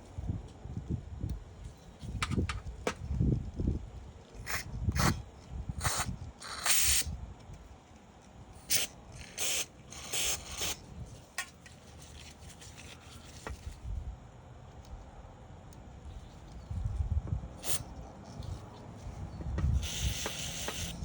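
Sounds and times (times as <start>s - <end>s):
hissing spray bursts: 5.8s - 7.1s, 8.6s - 10.8s, 17.6s - 17.8s, 19.7s - 21.0s.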